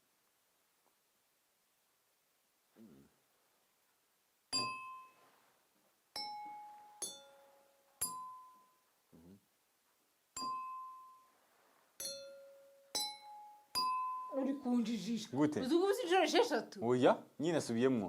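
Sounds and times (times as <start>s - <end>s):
bell-like strikes on small objects: 4.5s - 5.2s, 6.2s - 8.8s, 10.4s - 11.4s, 12.0s - 14.5s.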